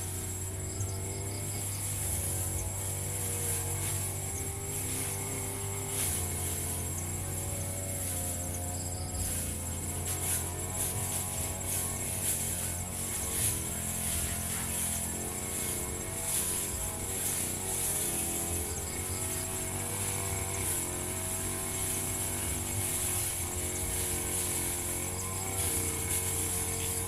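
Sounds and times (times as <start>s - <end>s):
brush cutter engine running: 0.0s - 27.0s.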